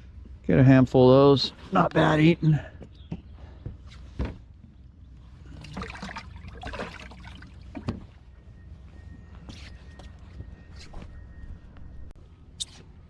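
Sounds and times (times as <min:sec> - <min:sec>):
water splashing and trickling: 0:05.4 - 0:08.0.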